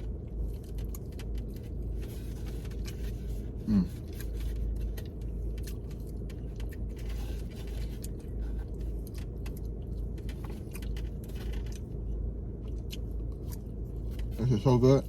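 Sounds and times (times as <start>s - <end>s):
eating clicks and scrapes: 0.0s - 12.0s
car interior hum: 0.0s - 15.0s.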